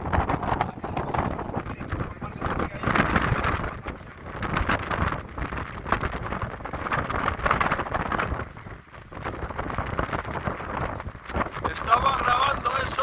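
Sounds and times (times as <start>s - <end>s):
rushing water: 0.0s - 13.0s
strong wind buffeting microphone: 0.0s - 13.0s.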